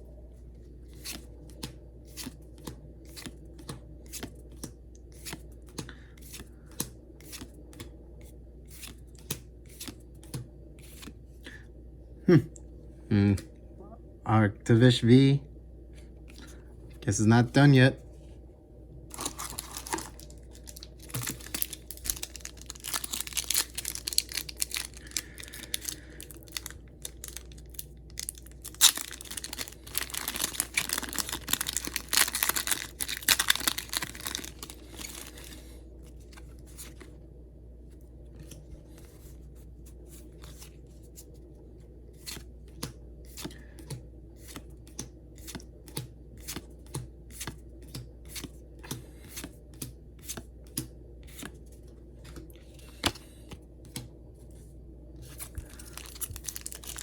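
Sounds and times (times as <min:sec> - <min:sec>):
foil wrapper tearing and crinkling: 0:19.1 - 0:35.6, 0:55.6 - 0:57.0.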